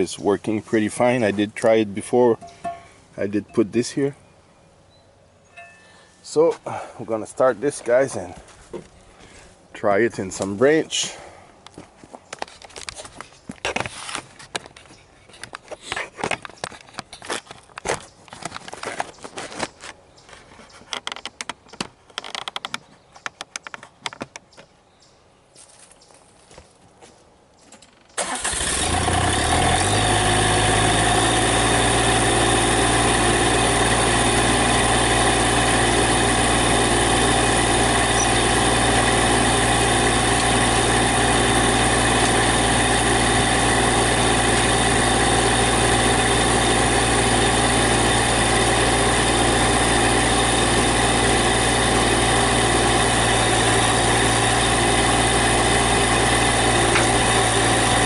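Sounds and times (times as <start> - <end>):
diesel tractor engine idling: 28.2 - 58.0.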